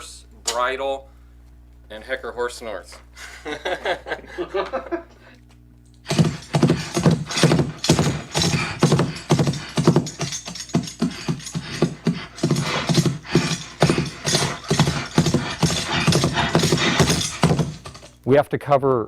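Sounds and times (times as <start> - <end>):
horse snorts: 6.1 - 18.1
jingling bridle: 6.1 - 18.2
prop hoofbeats: 6.1 - 18.2.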